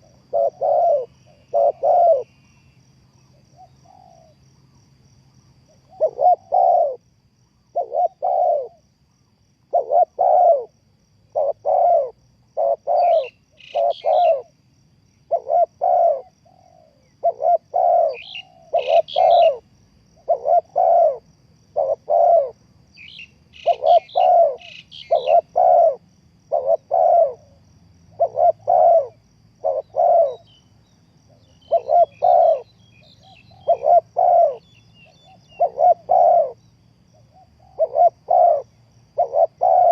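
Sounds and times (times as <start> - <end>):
dove cooing: 0.0 - 2.4, 3.2 - 4.4, 5.7 - 7.0, 7.6 - 8.8, 9.6 - 14.5, 15.3 - 30.6, 31.3 - 39.9
small bird chirping: 11.3 - 14.5, 15.2 - 19.6, 20.2 - 39.9.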